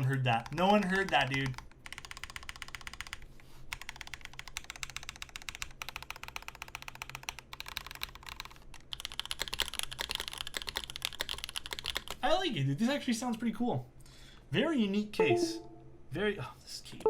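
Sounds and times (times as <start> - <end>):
mechanical keyboard typing: 0.0 - 12.2.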